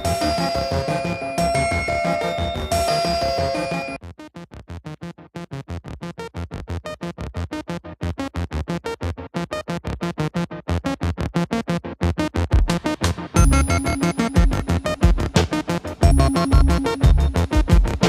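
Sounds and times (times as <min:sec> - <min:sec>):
choppy synthesizer notes: 0:13.4 - 0:18.0
heavy bass hits: 0:13.4 - 0:18.0.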